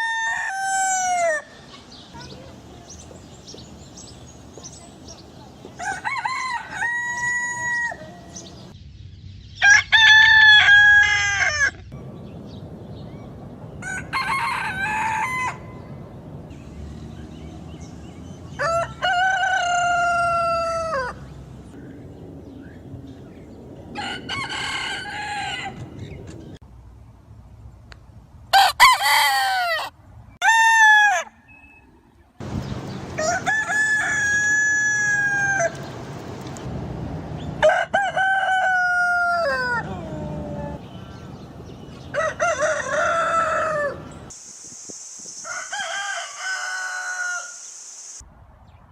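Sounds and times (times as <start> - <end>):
rooster crowing: 0.0 - 1.6, 5.8 - 8.5, 9.6 - 11.8, 13.8 - 15.8, 18.5 - 21.3, 24.0 - 26.0, 28.5 - 31.5, 33.2 - 35.9, 37.6 - 40.8, 42.0 - 44.2, 45.5 - 47.6.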